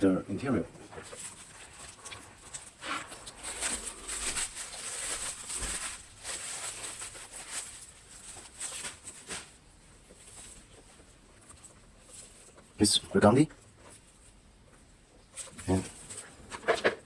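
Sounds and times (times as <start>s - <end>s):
leather rustling: 1.1s - 9.6s.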